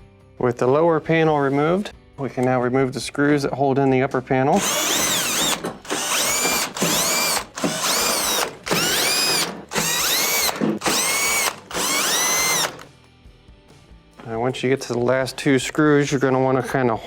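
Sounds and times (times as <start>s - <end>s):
power drill motor whine: 4.6s - 12.9s.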